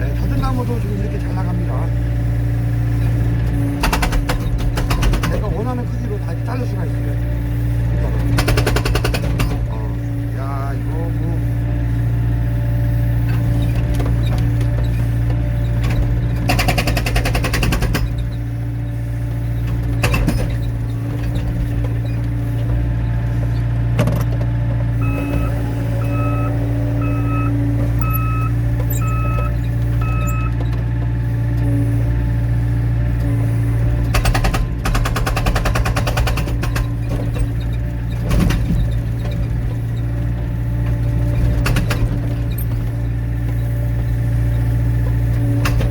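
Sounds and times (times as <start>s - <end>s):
excavator engine running: 0.0s - 45.9s
hydraulic breaker hammering wood: 3.5s - 5.9s, 8.1s - 10.2s, 13.2s - 18.4s, 19.7s - 22.0s, 23.9s - 31.2s, 34.0s - 39.3s, 40.9s - 42.9s
alarm beeping: 25.0s - 30.6s.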